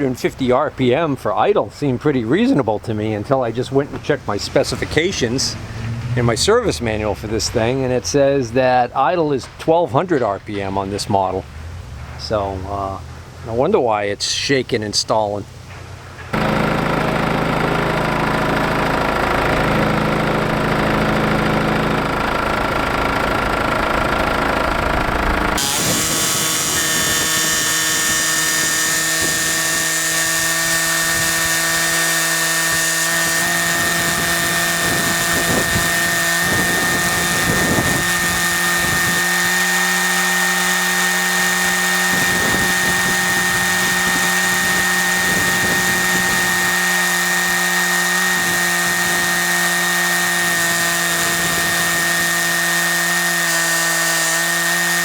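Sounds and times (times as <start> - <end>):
high engine whine: 4.4 - 8.0, 15.5 - 55.0
diesel engine idling: 16.3 - 28.3.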